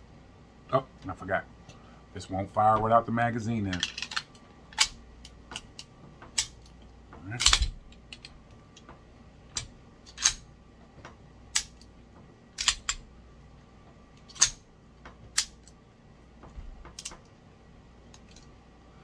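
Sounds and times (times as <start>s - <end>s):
pistol action clicks and snaps: 10.1s - 10.4s, 11.5s - 11.9s, 12.6s - 13.0s, 14.3s - 14.6s, 15.4s - 15.8s.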